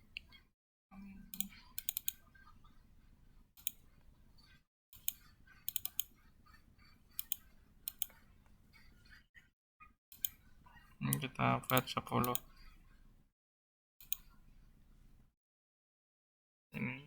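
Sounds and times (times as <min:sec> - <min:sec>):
computer mouse and keyboard clicks: 0:01.4 - 0:02.3, 0:03.6 - 0:09.0, 0:10.1 - 0:13.1, 0:14.0 - 0:14.4.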